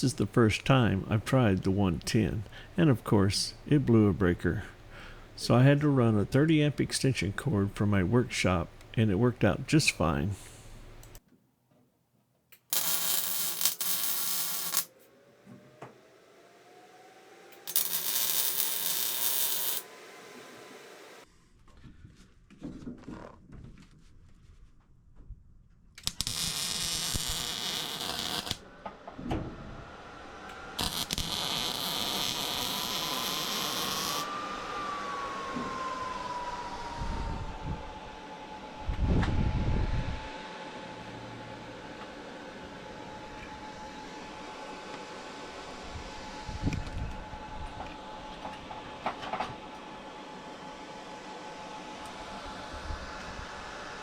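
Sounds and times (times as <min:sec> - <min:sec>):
arc welding hiss: 0:12.7 - 0:14.9, 0:17.7 - 0:19.9, 0:26.1 - 0:28.6, 0:30.8 - 0:34.3
welding machine whine: 0:12.7 - 0:21.2, 0:26.0 - 0:28.7, 0:29.6 - 0:39.2.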